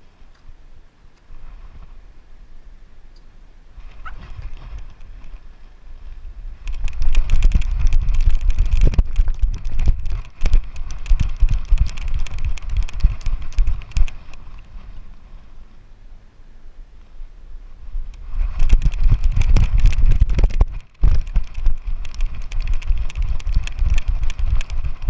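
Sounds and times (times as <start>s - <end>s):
low rumble: 6.1s - 25.0s
camera thumps and clicks: 6.6s - 14.6s, 18.5s - 25.0s.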